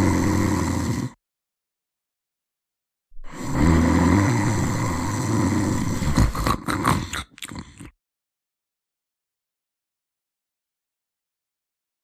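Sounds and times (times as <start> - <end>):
cartoon snoring: 0.0 - 1.2, 3.2 - 8.0.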